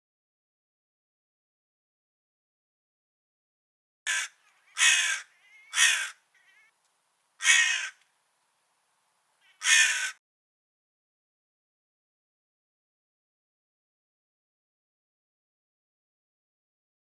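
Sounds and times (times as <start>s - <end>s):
crow cawing: 4.1s - 6.8s, 7.4s - 8.0s, 9.4s - 10.2s
faint soft bird calls: 4.1s - 8.2s, 9.4s - 10.2s.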